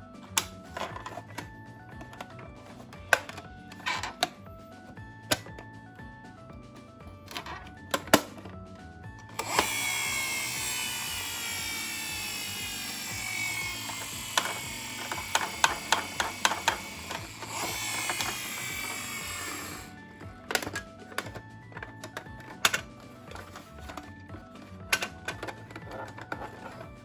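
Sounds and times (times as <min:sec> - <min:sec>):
toy car whirring: 0:09.3 - 0:27.0.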